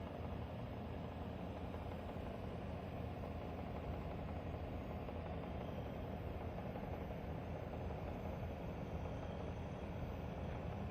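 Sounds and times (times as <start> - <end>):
dehumidifier fan rushing: 0.0 - 10.9.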